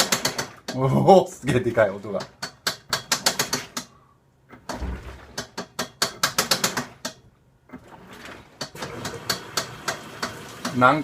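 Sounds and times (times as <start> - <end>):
washing machine drum rattling: 4.6 - 7.2.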